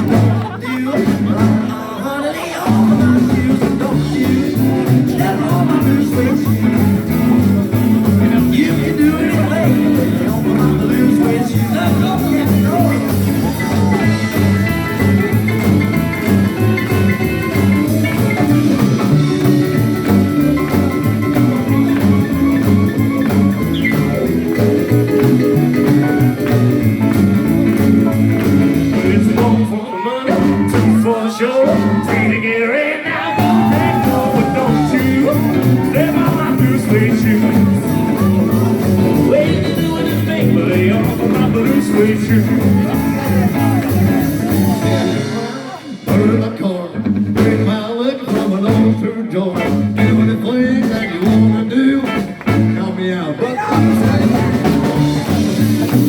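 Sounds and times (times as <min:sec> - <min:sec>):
live rockabilly band playing: 0:00.0 - 0:56.0
sliding bending guitar notes: 0:02.6 - 0:32.6, 0:33.2 - 0:47.8.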